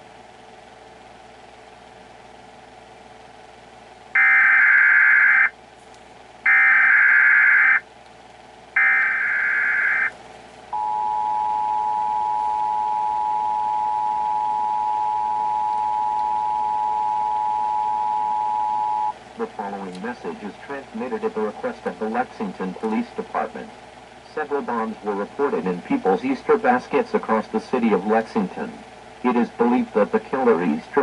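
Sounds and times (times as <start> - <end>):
buzzing digital header tones: 4.2 - 5.5, 6.5 - 7.8, 8.8 - 10.1
two-tone attention signal: 4.2 - 5.5, 6.5 - 7.8, 8.8 - 10.1, 10.8 - 19.2.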